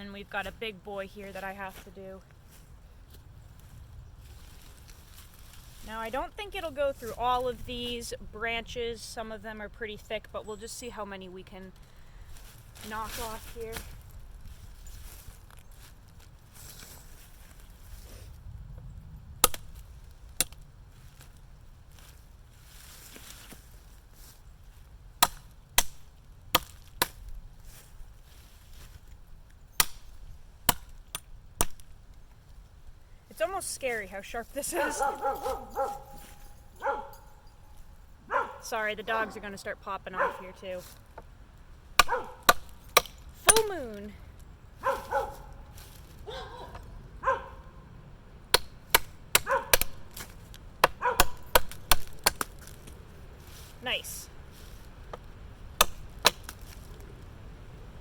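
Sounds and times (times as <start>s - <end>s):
tomahawk blade striking wood: 19.4s - 20.6s, 25.2s - 27.3s, 29.8s - 32.0s, 42.0s - 44.0s, 48.5s - 52.8s, 55.1s - 56.7s
dogs barking: 34.8s - 37.6s, 38.2s - 39.5s, 40.1s - 40.6s, 42.0s - 42.5s, 44.8s - 47.8s, 49.4s - 50.0s, 50.8s - 51.6s.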